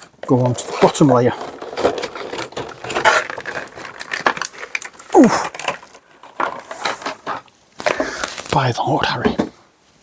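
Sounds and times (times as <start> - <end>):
game pieces rustling and clattering: 0.0 - 9.5
person grunting: 5.1 - 5.5.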